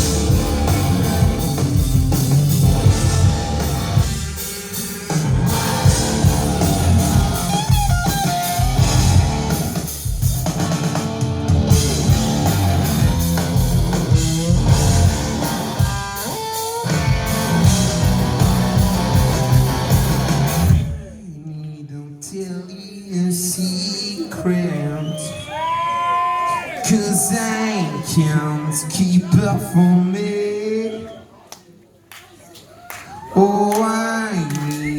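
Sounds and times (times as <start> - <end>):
electric guitars: 0.0 - 21.0
drum kit: 0.0 - 21.1.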